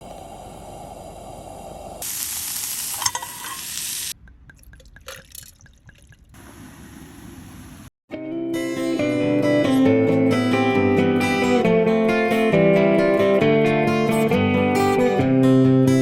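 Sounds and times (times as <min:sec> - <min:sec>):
food sizzling in a frying pan: 0:02.0 - 0:04.2
acoustic guitar music: 0:08.2 - 0:16.0.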